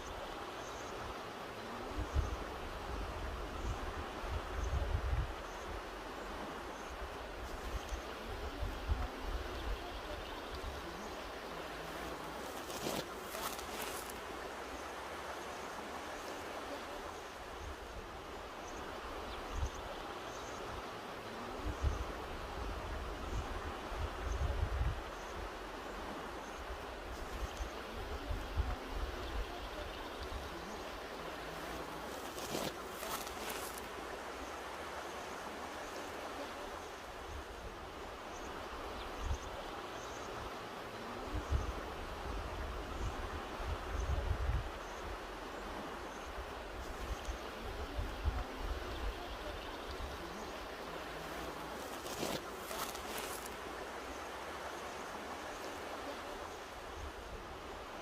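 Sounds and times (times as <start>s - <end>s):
mountain river rushing: 0.0s - 58.0s
wind rumble on microphone: 1.8s - 11.0s, 21.4s - 30.7s, 40.4s - 53.5s
wind buffeting microphone: 41.3s - 44.8s.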